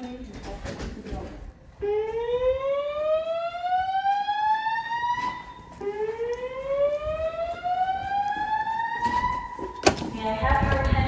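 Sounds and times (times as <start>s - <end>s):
slow whoop fire alarm tone: 1.8s - 9.8s.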